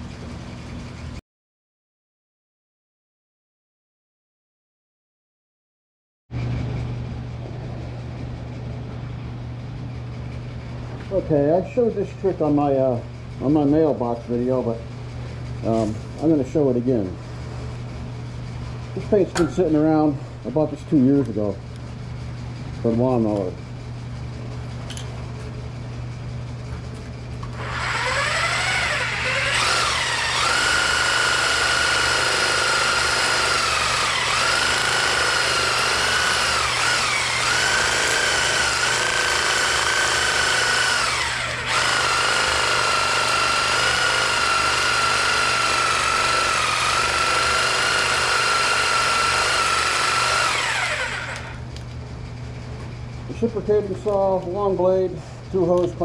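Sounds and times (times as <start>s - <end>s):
reciprocating saw motor whining: 27.4s - 51.8s.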